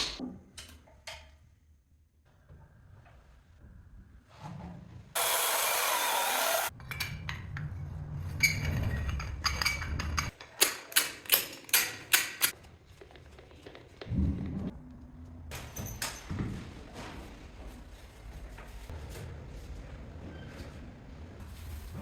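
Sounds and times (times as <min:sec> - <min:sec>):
knocks and scraping: 0:06.6 - 0:10.6.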